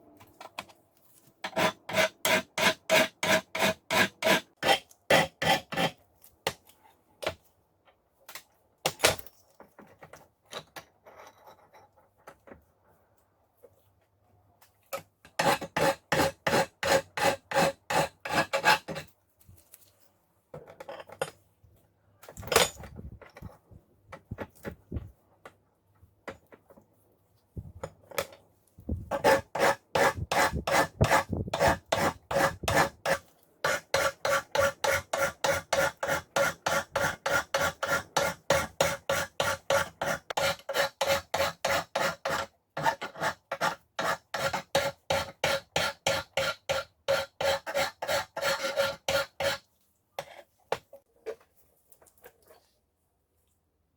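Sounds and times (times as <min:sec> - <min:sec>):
hand file rasping on steel: 0:01.4 - 0:06.0, 0:15.3 - 0:19.1, 0:29.1 - 0:49.6
knocks and scrapes: 0:08.9 - 0:12.9, 0:46.4 - 0:52.8.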